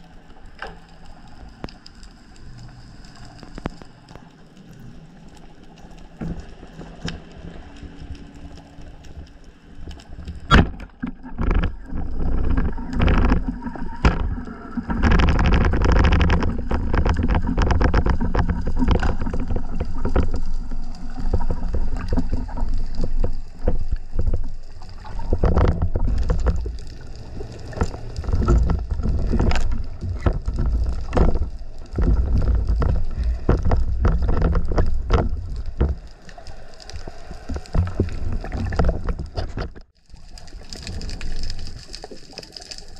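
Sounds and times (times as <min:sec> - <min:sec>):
rushing water: 0:00.0 - 0:42.9
sharp clicks and knocks: 0:09.8 - 0:27.0, 0:27.7 - 0:36.1.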